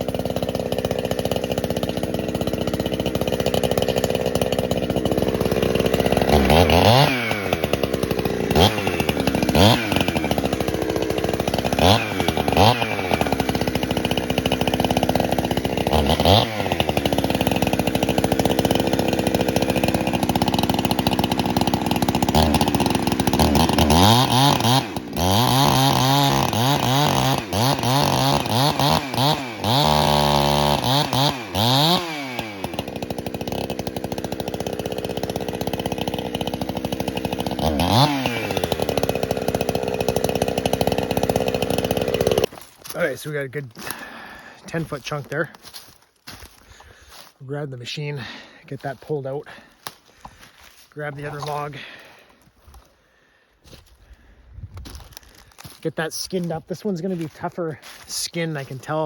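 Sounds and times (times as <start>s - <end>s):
chainsaw cutting log: 0.0s - 59.0s.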